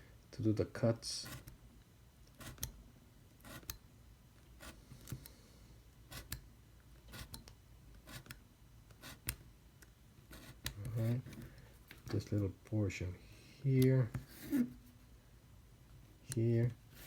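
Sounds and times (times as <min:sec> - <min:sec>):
craft knife cutting paper: 0:02.3 - 0:02.8, 0:03.4 - 0:03.8, 0:06.1 - 0:06.4, 0:07.1 - 0:08.4.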